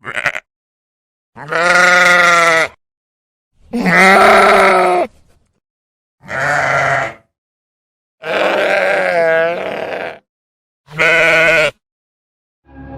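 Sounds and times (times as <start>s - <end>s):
sheep bleating: 0.0s - 0.5s, 1.4s - 2.8s, 3.8s - 5.1s, 6.2s - 7.3s, 8.2s - 10.2s, 10.9s - 11.8s.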